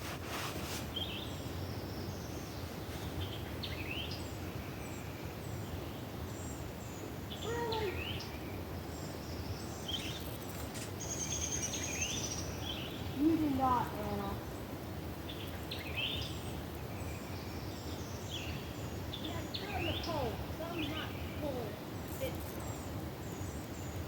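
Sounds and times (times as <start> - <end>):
steady background hiss: 0.0 - 24.0
bird chirps: 9.1 - 14.6.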